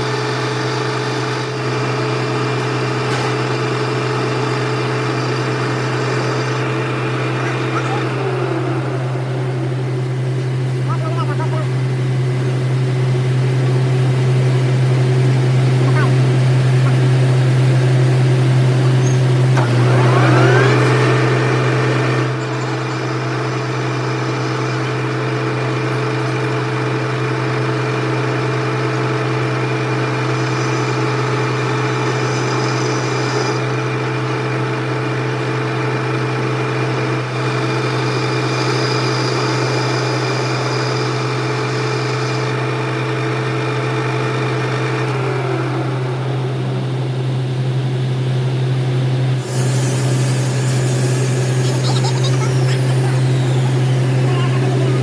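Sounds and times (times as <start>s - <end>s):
lathe motor whine: 0.0s - 55.0s.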